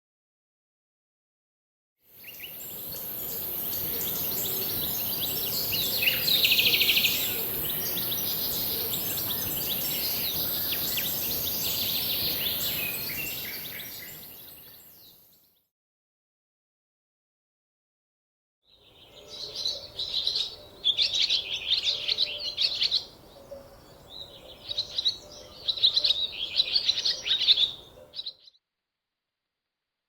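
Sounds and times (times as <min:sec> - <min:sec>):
steady high hiss: 0:02.2 - 0:14.2
birds singing and calling: 0:02.2 - 0:15.2, 0:19.0 - 0:28.5.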